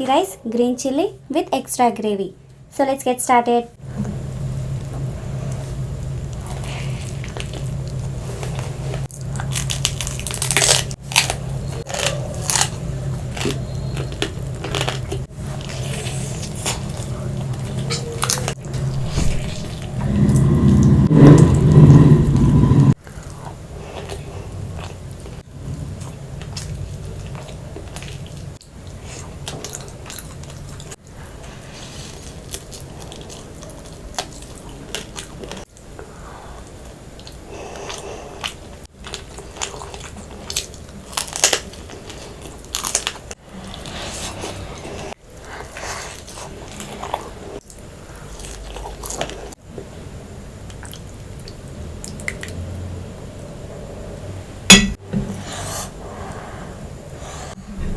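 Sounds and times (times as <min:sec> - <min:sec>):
steady low hum: 0:03.8 - 0:24.8, 0:53.3 - 0:57.9
wet squishing and chewing: 0:06.3 - 0:19.9, 0:23.2 - 0:36.0, 0:36.6 - 0:49.6, 0:50.6 - 0:53.5
crunching and biting food: 0:06.4 - 0:20.3, 0:37.2 - 0:49.5.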